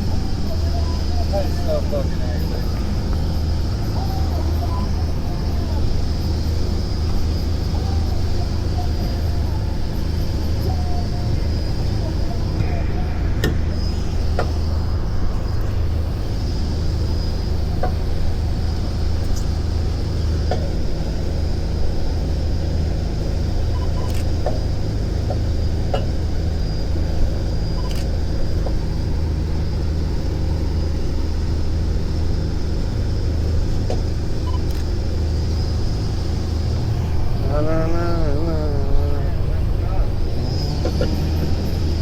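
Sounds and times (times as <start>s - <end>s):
boat engine drone: 0.0s - 42.0s
high whine: 0.0s - 42.0s.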